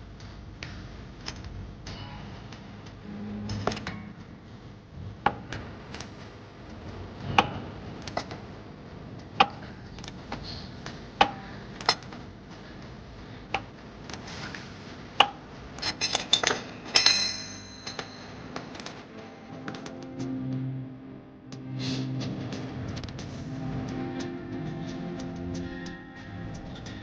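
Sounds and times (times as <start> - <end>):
metallic clinks of tools: 15.8 - 18.5.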